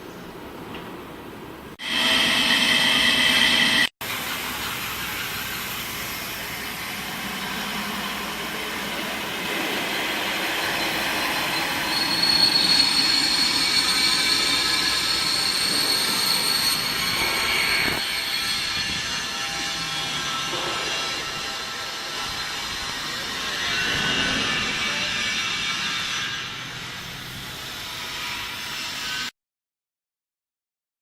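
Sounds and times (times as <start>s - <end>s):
high whine: 1.8s - 3.9s
machine cutting steel beam: 1.8s - 29.3s.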